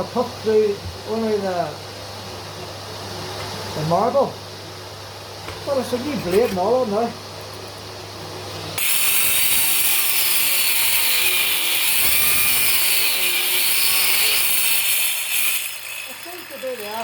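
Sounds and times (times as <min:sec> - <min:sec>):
stone-cutting saw cutting marble: 0:08.7 - 0:17.0.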